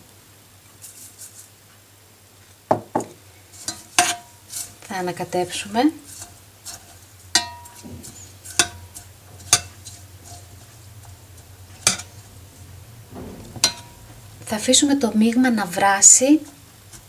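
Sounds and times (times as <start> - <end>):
low steady hum: 1.8 - 17.0
spoon clinking against pot: 3.6 - 4.4, 6.2 - 10.4.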